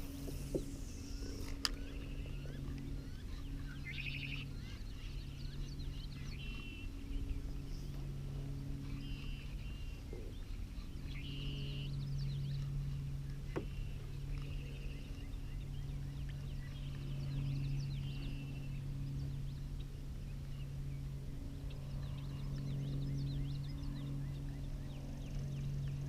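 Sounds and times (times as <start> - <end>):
steady low hum: 0.0 - 26.0
small birds chirping: 0.1 - 21.0.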